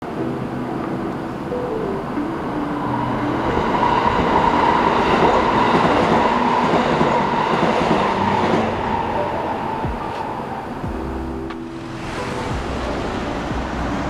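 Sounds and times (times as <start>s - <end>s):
road noise inside moving car: 10.0s - 14.0s.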